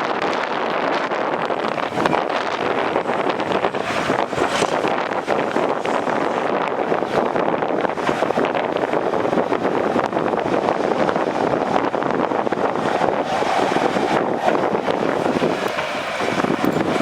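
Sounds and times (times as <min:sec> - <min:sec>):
diesel engine running: 0:14.6 - 0:17.0
dense metallic clatter: 0:15.2 - 0:17.0.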